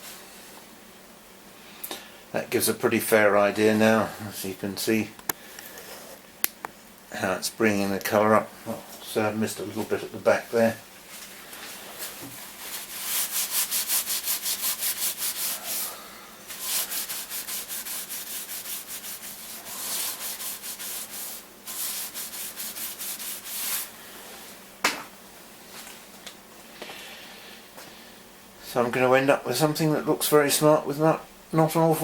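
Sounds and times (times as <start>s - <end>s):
hand scrubbing painted metal: 11.6s - 24.4s.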